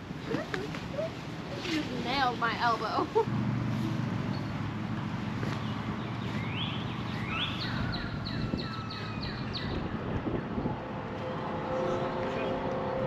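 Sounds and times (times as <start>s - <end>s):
songbird singing: 4.2s - 13.0s
wind noise on microphone: 5.4s - 13.0s.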